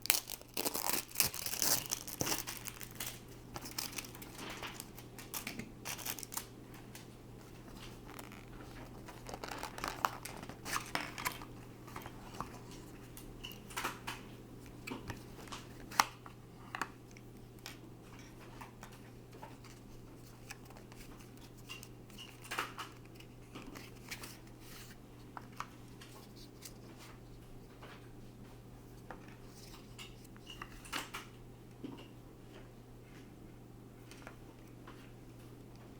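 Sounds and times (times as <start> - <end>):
plastic packaging clicks and rustles: 0.0 - 24.6.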